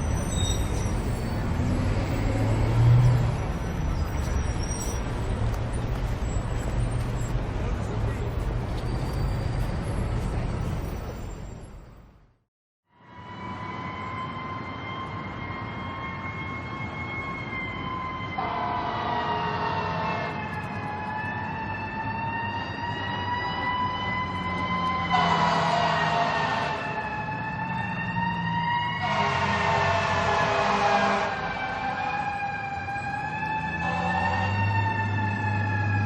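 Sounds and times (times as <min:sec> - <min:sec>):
emergency siren wailing: 0:12.9 - 0:36.0
low harsh horn blasts: 0:18.4 - 0:20.4, 0:25.1 - 0:26.8, 0:29.0 - 0:31.4.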